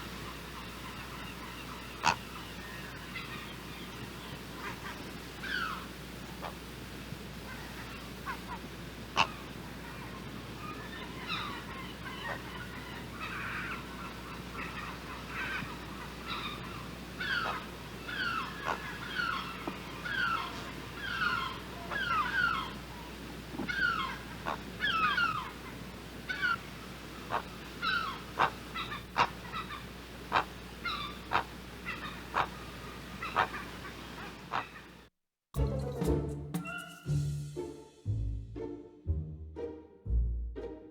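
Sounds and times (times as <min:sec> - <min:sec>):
heron harsh calls: 0:00.8 - 0:03.6, 0:07.5 - 0:22.8, 0:23.6 - 0:34.9.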